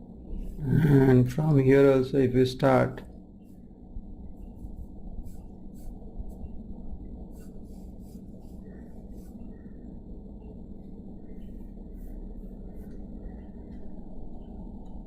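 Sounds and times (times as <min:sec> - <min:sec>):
steady low hum: 0:00.0 - 0:15.0
pencil sketching on paper: 0:03.4 - 0:09.8, 0:11.3 - 0:13.5.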